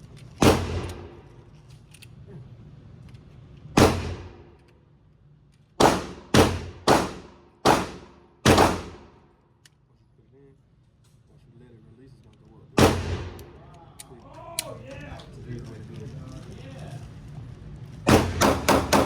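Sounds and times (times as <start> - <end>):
handgun shots echoing indoors: 0.4 - 1.4, 5.8 - 9.7.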